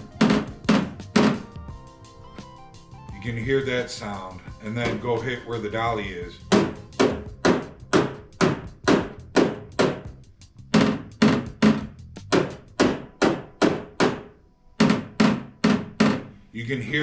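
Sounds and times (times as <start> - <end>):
hammer tapping on metal: 6.5 - 16.3.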